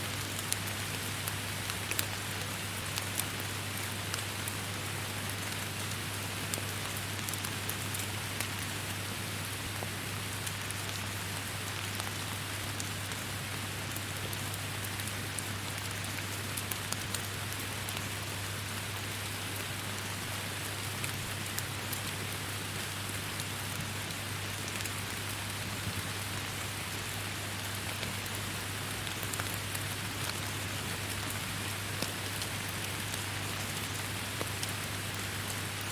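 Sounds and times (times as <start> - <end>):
raindrops ticking on leaves: 0.0 - 35.9
steady rain hiss: 0.0 - 35.9.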